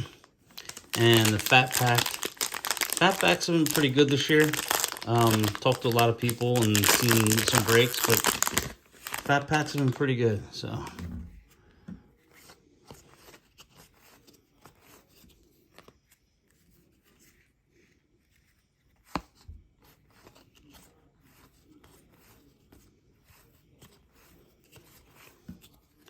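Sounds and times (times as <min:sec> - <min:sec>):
trading cards rustling: 0:00.0 - 0:11.0.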